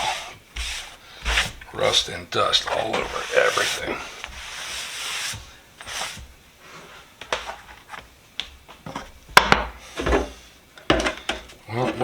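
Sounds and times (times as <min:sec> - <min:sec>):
objects handled on workbench: 0:00.0 - 0:06.4, 0:07.2 - 0:12.0
rubbing brushing sound: 0:00.0 - 0:08.0.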